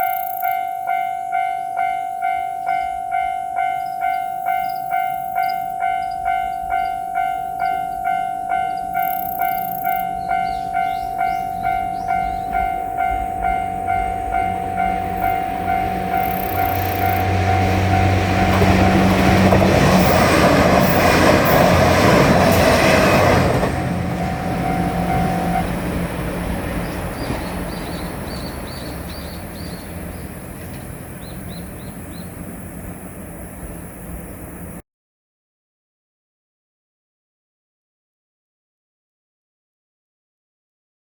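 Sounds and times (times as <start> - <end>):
level crossing warning bell: 0.0 - 32.3
diesel train engine running: 0.0 - 34.8
train wheels rushing past: 7.7 - 34.8.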